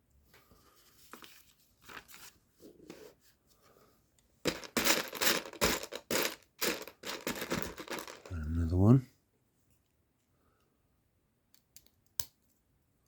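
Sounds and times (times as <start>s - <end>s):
plastic pieces rustling: 4.5s - 8.5s.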